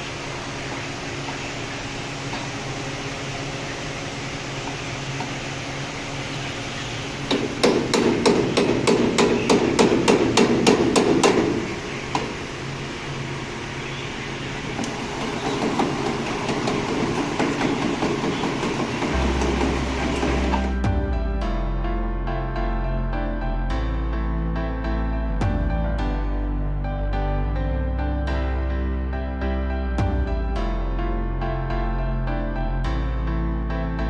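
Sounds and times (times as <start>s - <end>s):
steady mechanical hum: 0.0s - 21.4s
rapid hammering: 7.3s - 12.3s, 14.8s - 20.9s.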